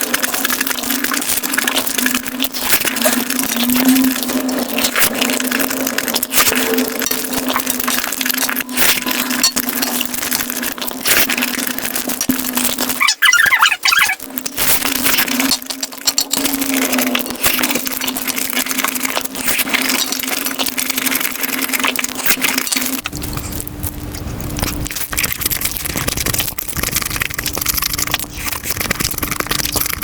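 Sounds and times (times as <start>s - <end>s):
crunchy chewing: 0.0s - 30.0s
steady low hum: 23.0s - 30.0s.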